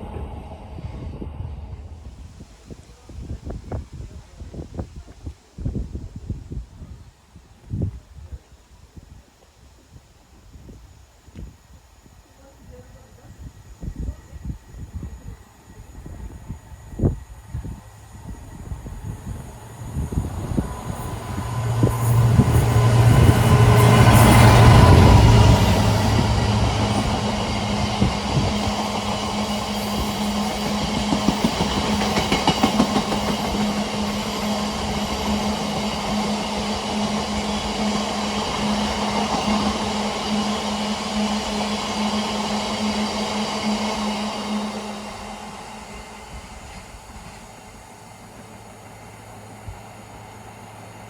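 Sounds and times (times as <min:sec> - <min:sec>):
diesel locomotive engine: 0:00.0 - 0:51.0
train wheel clatter: 0:17.5 - 0:51.0.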